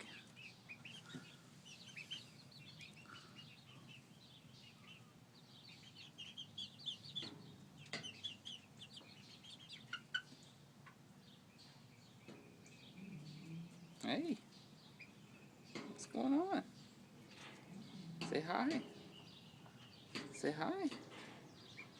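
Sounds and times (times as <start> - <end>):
chicks peeping and clucking: 0.0 - 21.9.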